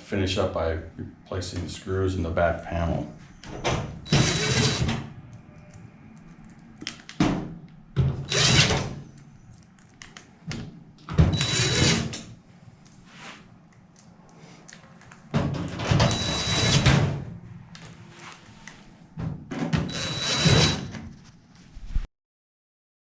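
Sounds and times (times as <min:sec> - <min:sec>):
power driver whining: 0:04.0 - 0:05.0, 0:08.1 - 0:09.0, 0:11.2 - 0:12.2, 0:15.9 - 0:17.1, 0:19.8 - 0:20.9
screws driven into sheet metal: 0:04.0 - 0:05.0, 0:08.2 - 0:09.0, 0:11.3 - 0:12.3, 0:16.0 - 0:17.1, 0:19.8 - 0:21.0.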